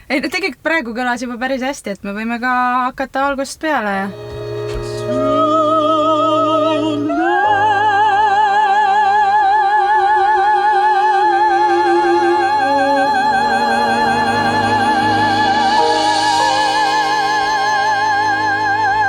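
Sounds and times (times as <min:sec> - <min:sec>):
low sustained strings: 0:04.1 - 0:19.0
soprano singing with vibrato: 0:04.1 - 0:19.0.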